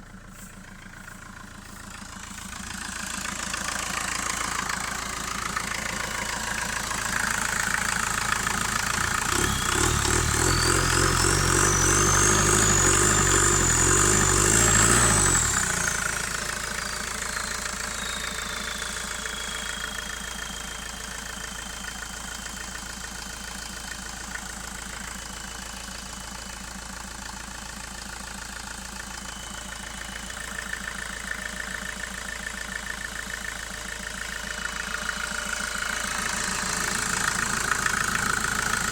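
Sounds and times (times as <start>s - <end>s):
diesel engine revving and idling: 0.0s - 38.9s
turbocharger whistle: 2.7s - 22.9s, 28.9s - 38.9s.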